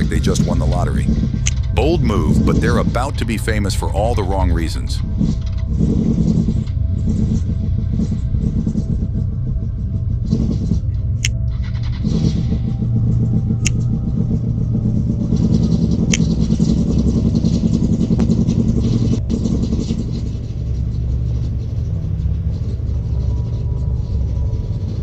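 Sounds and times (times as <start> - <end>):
motorcycle engine rumbling: 0.0 - 9.0.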